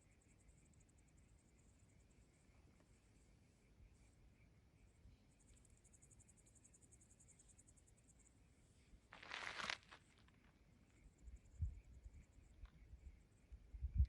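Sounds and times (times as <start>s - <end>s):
brief crunch: 9.2s - 10.2s.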